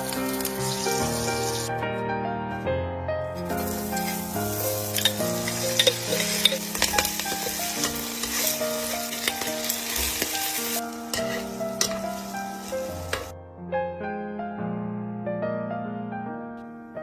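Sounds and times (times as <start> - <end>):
food sizzling in a pan: 0.0 - 1.7, 3.5 - 13.3
background music: 0.0 - 17.0.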